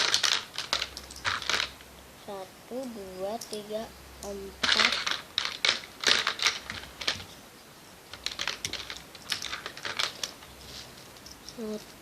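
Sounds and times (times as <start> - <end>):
paper and plastic crackling: 8.2 - 10.9.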